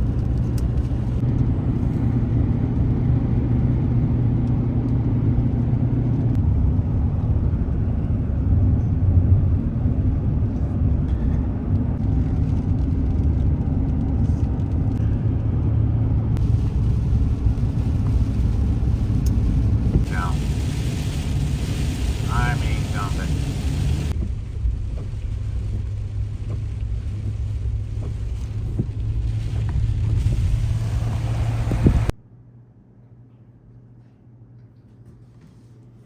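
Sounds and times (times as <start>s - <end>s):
vehicle engine and tyres rumbling: 0.0s - 32.2s.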